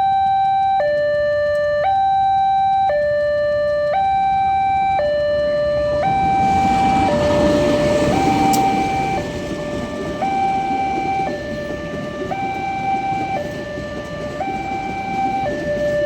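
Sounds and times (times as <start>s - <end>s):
level-crossing two-tone alarm: 0.0s - 16.0s.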